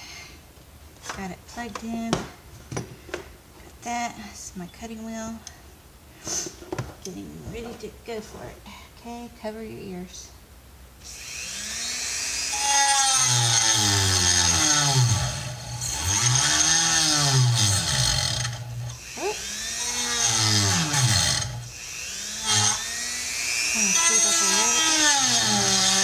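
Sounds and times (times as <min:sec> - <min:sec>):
rotary tool cutting wheel whine: 0:11.0 - 0:26.0.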